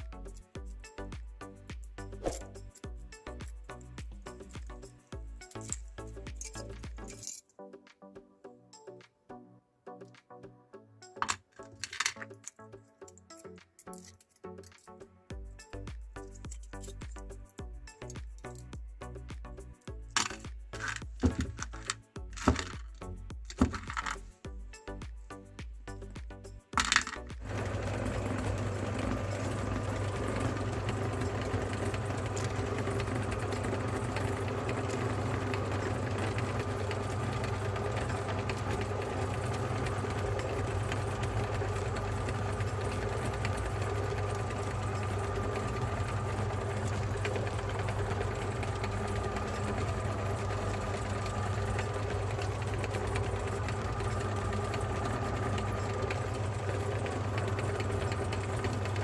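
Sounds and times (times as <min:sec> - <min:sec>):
meat grinder motor humming: 0:20.2 - 0:24.2, 0:26.8 - 0:59.0.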